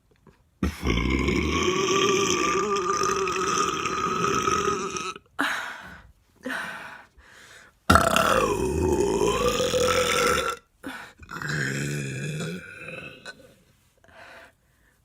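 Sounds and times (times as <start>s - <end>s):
woman burping: 0.6s - 5.3s, 7.9s - 13.5s.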